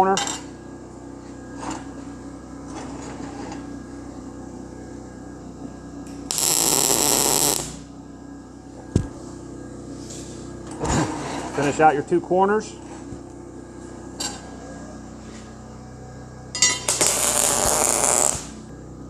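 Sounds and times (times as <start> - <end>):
steady low hum: 0.0 - 19.0
welding arc crackling: 6.2 - 7.9, 16.7 - 18.7.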